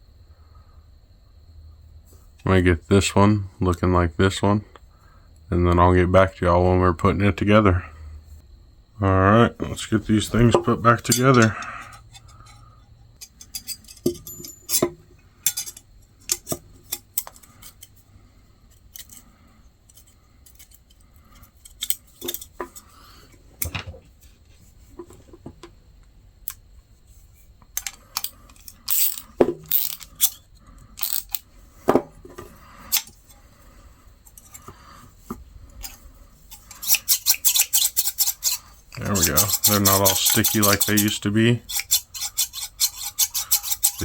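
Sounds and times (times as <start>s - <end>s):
steel shears clinking and clicking: 11.0s - 12.6s, 13.2s - 17.9s, 27.8s - 30.4s, 31.0s - 31.4s, 35.8s - 44.0s.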